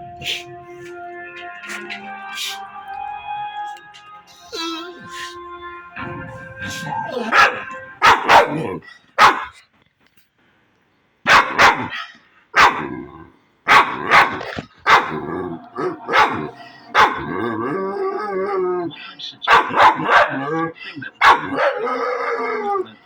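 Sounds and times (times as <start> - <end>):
dog barking: 7.1 - 9.6, 11.2 - 13.0, 13.7 - 17.6, 19.4 - 22.1.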